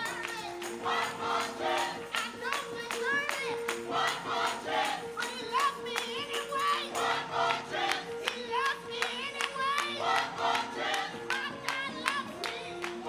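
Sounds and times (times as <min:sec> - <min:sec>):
steady percussive beat: 0:00.0 - 0:08.4
gospel choir singing: 0:00.0 - 0:13.0.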